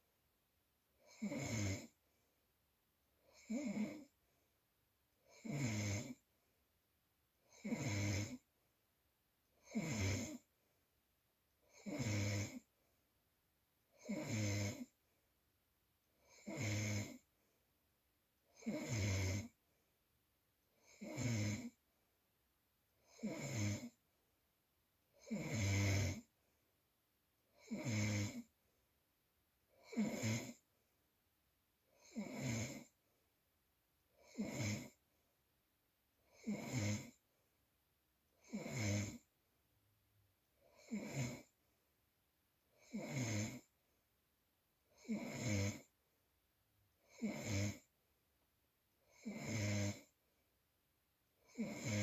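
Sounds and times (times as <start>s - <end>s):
person snoring: 1.1s - 1.9s, 3.3s - 4.1s, 5.3s - 6.2s, 7.5s - 8.4s, 9.7s - 10.4s, 11.7s - 12.6s, 14.0s - 14.9s, 16.3s - 17.2s, 18.6s - 19.5s, 20.9s - 21.8s, 23.1s - 24.0s, 25.2s - 26.3s, 27.6s - 28.5s, 29.8s - 30.6s, 32.0s - 32.9s, 34.2s - 35.0s, 36.3s - 37.2s, 38.4s - 39.2s, 40.7s - 41.5s, 42.8s - 43.7s, 45.0s - 45.9s, 47.1s - 47.9s, 49.2s - 50.1s, 51.5s - 52.0s.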